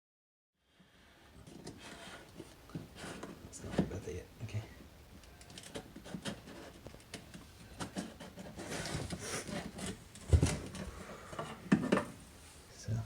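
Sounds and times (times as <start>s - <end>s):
plastic rubbing and clicking: 5.2s - 12.1s.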